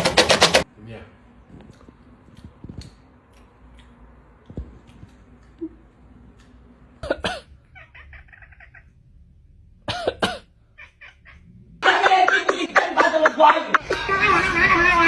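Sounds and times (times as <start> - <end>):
rapid pulses: 0.0 - 0.6
cat calling: 7.6 - 9.0, 10.6 - 11.7.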